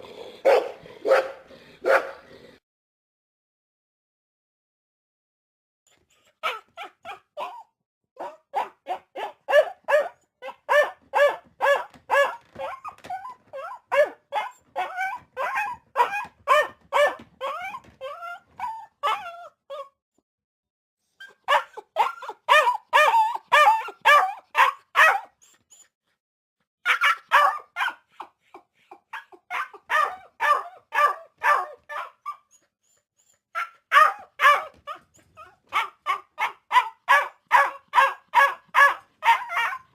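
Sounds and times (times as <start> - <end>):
dog barking sharply: 0.4 - 2.2, 8.2 - 10.1, 10.7 - 12.4, 15.5 - 17.2, 26.9 - 28.0, 29.5 - 32.1, 33.6 - 34.7, 35.7 - 39.8.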